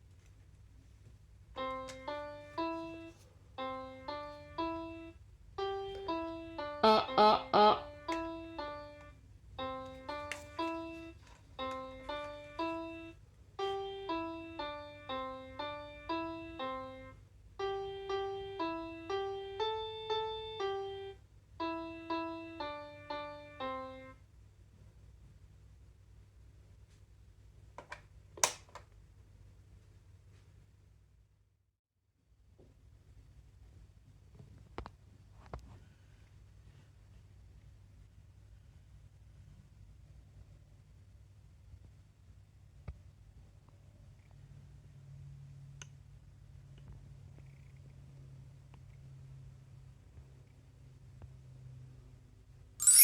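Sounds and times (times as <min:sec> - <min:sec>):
toy keyboard melody: 0:01.6 - 0:24.2.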